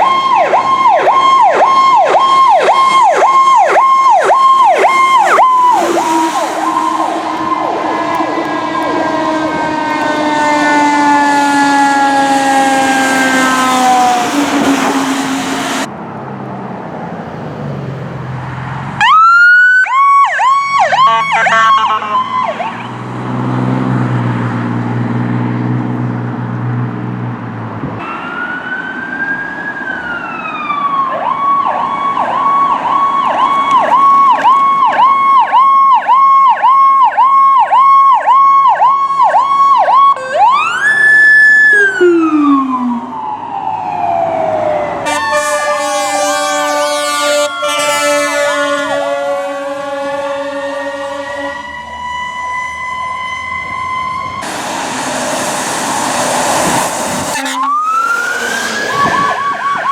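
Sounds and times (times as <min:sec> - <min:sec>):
emergency vehicle siren: 0:00.0 - 0:15.9, 0:18.4 - 0:26.6, 0:27.8 - 0:59.9.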